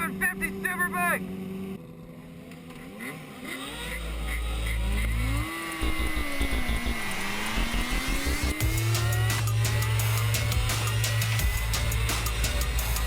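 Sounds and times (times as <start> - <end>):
racing motorcycle engine revving: 0.0 - 13.0
deep low drone: 4.0 - 13.0.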